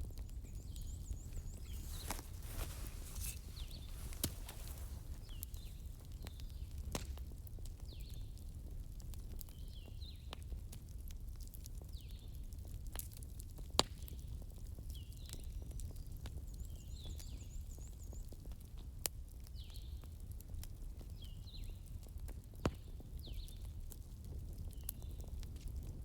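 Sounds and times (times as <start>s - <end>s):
burning wood crackling: 0.0s - 9.2s
sharp pops: 0.8s - 5.8s.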